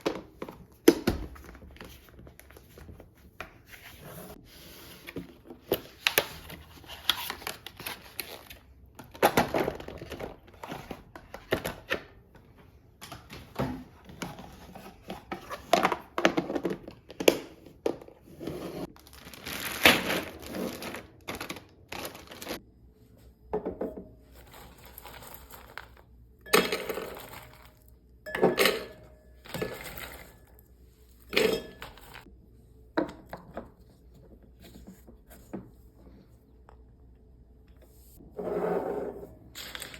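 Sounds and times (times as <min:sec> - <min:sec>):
packaging rustling and crinkling: 0:18.9 - 0:22.6.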